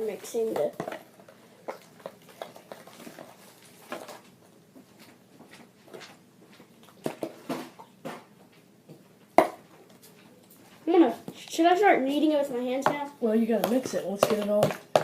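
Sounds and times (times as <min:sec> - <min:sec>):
spoon stirring slime: 0:00.0 - 0:04.2, 0:11.2 - 0:15.0.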